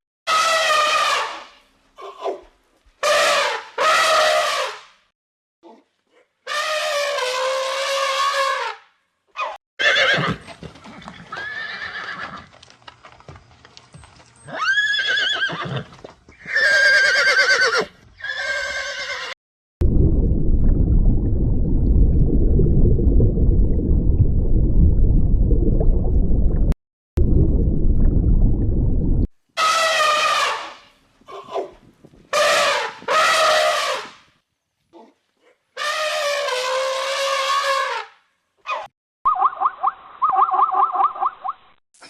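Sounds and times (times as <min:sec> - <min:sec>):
horses neighing: 0:09.8 - 0:12.5, 0:14.5 - 0:19.4
steady low rumbling noise: 0:19.8 - 0:29.3.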